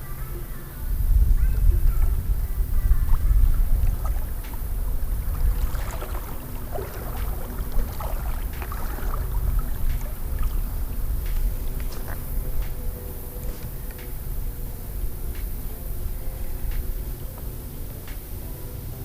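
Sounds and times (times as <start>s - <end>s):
wind buffeting microphone: 0.0s - 19.0s
river water splashing: 1.9s - 19.0s.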